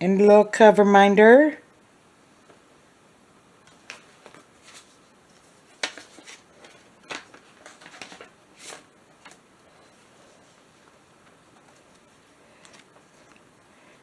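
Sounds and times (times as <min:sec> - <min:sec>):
packaging crinkling: 0:03.7 - 0:13.4.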